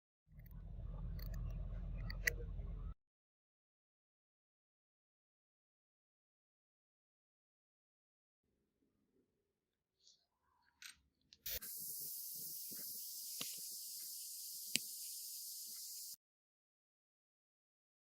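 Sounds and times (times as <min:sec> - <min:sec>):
click: 0:01.2 - 0:02.4, 0:12.4 - 0:16.2
high spraying hiss: 0:11.5 - 0:16.2.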